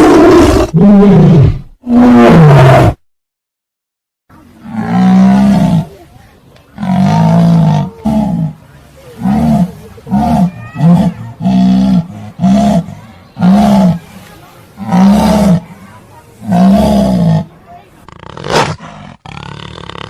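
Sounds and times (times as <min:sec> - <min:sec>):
big cat roaring: 0:04.6 - 0:06.0, 0:06.8 - 0:08.6, 0:09.2 - 0:14.0, 0:14.8 - 0:15.8, 0:16.4 - 0:20.0.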